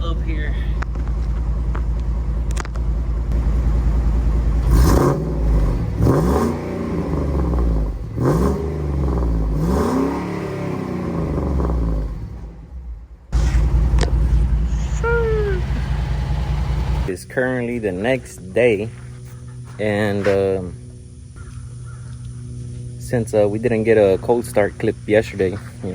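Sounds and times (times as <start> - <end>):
engine revving: 0.0 - 17.1
truck engine idling: 0.0 - 25.9.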